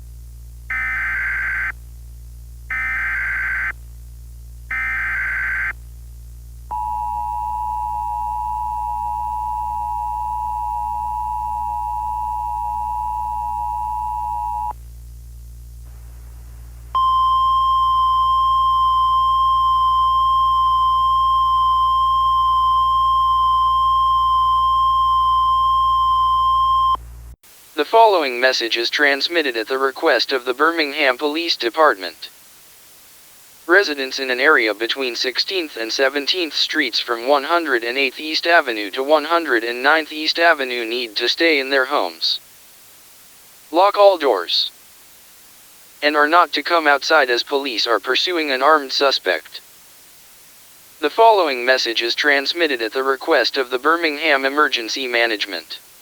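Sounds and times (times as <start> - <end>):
screechy digital data bursts: 0.7 - 1.7, 2.7 - 3.7, 4.7 - 5.7.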